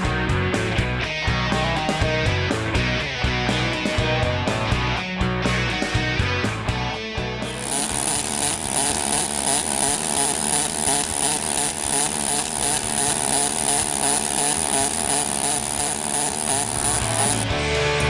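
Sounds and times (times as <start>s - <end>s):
high whine: 7.3s - 18.0s
welding arc buzzing and crackling: 7.5s - 17.5s.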